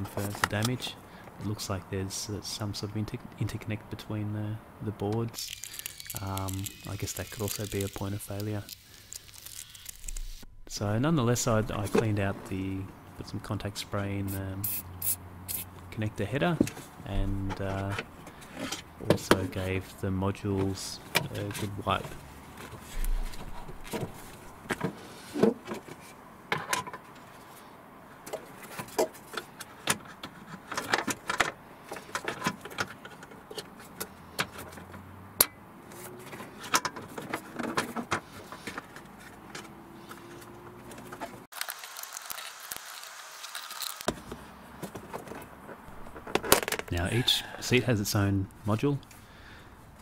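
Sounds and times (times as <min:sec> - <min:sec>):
small parts and tools rattling: 0:05.4 - 0:10.3, 0:44.8 - 0:47.0.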